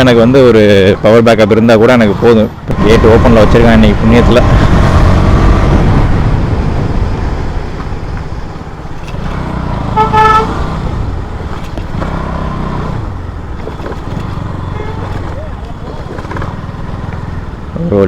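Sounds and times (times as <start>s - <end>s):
motorcycle engine running: 2.8s - 18.0s
horn toot: 9.0s - 10.9s, 14.6s - 15.4s.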